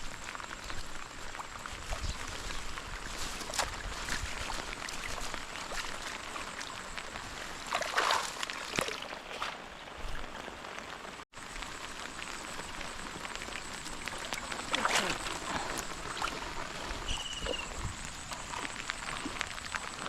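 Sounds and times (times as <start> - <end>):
heavy rain falling: 9.8 - 20.0.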